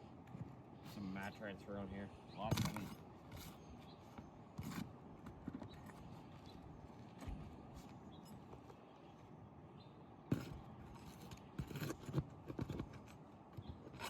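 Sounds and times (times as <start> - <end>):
tools knocking and scraping shingles: 2.4 - 6.1, 10.3 - 14.0.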